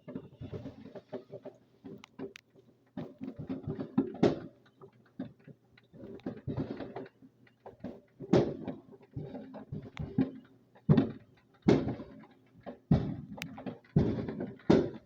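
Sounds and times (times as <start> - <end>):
fireworks popping and crackling: 6.2 - 7.1, 7.8 - 15.0.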